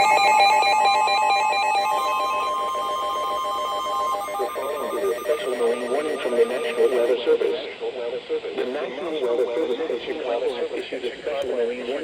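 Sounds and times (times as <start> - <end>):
warbling alert tones: 1.3 - 7.1
voice announcement: 4.1 - 12.0.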